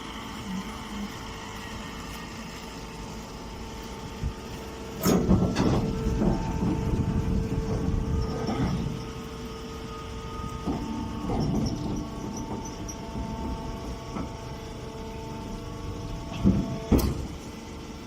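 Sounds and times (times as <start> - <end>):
baler machine humming: 0.0 - 18.0
machine knocks: 5.0 - 7.0, 16.3 - 17.3
low rumble: 5.3 - 9.0.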